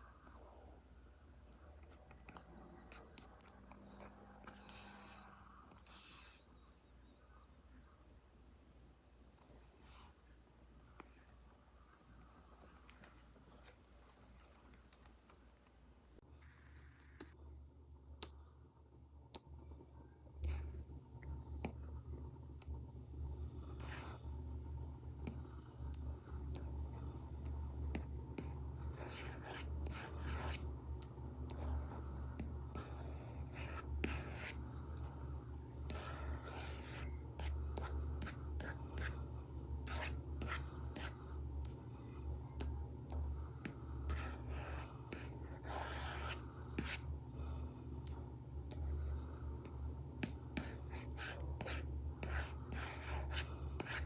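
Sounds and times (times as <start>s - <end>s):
stylus scratching on a screen: 27.9s - 30.7s, 31.5s - 41.8s, 43.1s - 47.1s, 50.2s - 54.0s.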